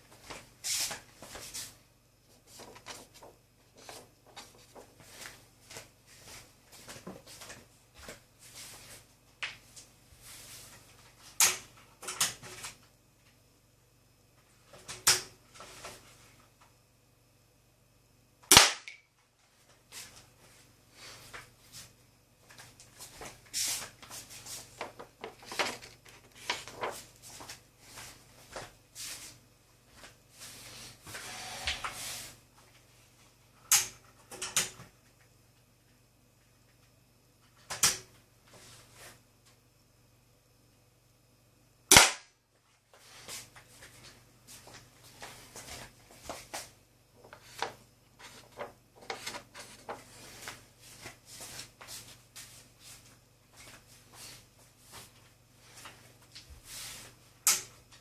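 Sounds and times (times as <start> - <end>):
toy pistol firing: 18.5 - 19.0, 41.9 - 42.3.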